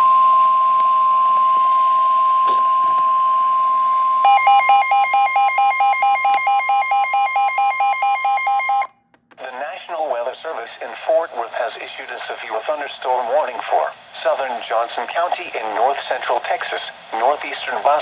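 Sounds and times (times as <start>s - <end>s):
steady alarm tone: 0.0s - 8.9s
rapid pulsing beeps: 2.0s - 8.9s.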